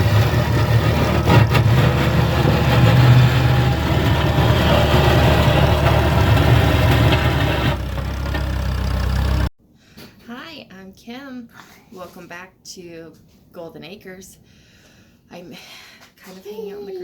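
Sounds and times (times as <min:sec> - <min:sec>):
engine running with low hum: 0:00.0 - 0:09.5.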